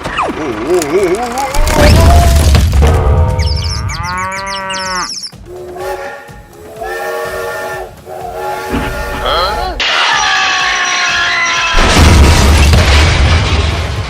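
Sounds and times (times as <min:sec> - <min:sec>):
wailing calls bending in pitch: 0:03.9 - 0:11.6.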